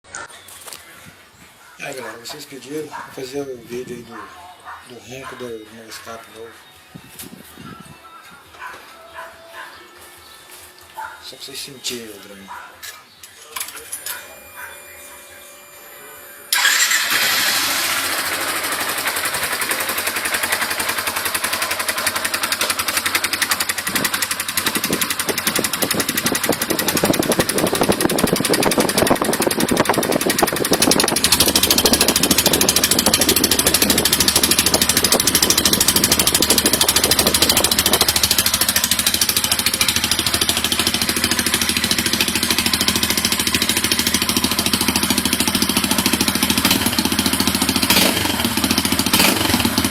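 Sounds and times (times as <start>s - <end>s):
motorcycle engine idling: 16.6s - 49.9s.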